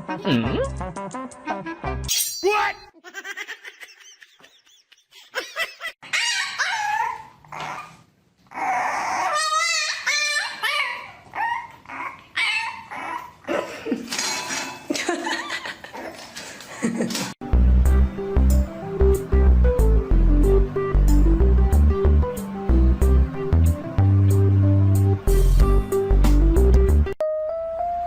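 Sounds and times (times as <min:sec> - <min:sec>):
pet whining and yelping: 0:06.0 - 0:13.5.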